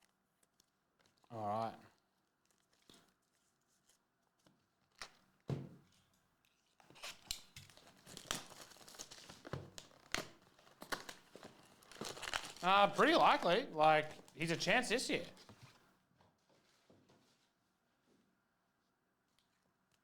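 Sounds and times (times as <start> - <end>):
wrapper tearing and crinkling: 7.0 - 14.4.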